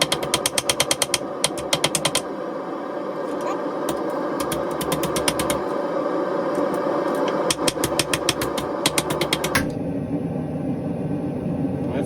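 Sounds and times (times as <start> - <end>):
hammer striking hot steel: 0.0 - 2.3, 3.9 - 5.7, 6.7 - 9.8
steady background roar: 0.0 - 12.0.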